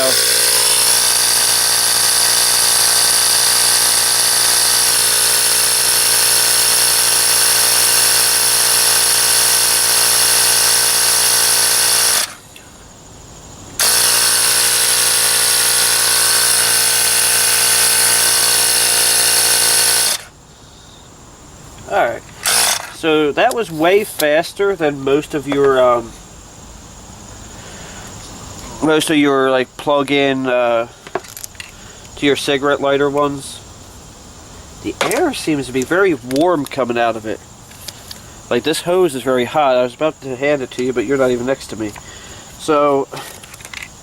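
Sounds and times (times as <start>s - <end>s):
tyre inflator compressor running: 0.0s - 12.6s, 13.7s - 20.4s, 22.3s - 23.0s.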